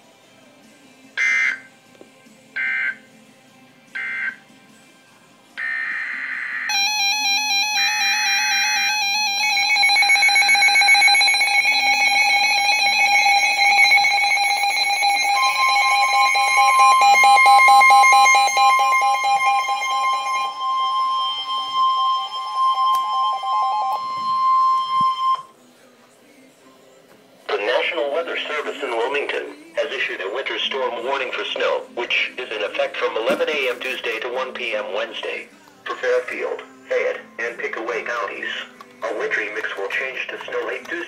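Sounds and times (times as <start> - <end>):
warbling multi-tone alarm: 1.2 - 1.7, 2.6 - 3.0, 4.0 - 4.4, 5.6 - 25.5.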